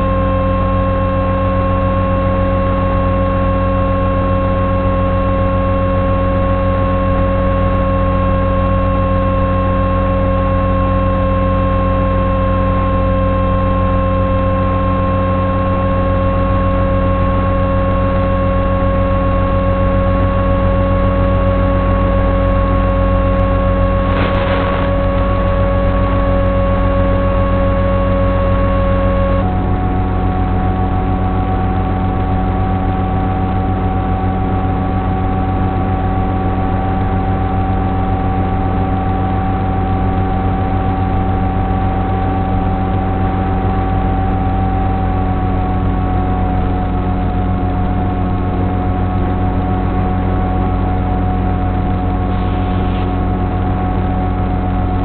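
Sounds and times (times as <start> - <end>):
electric motor and propeller whine: 12.9 - 34.0, 36.8 - 55.0.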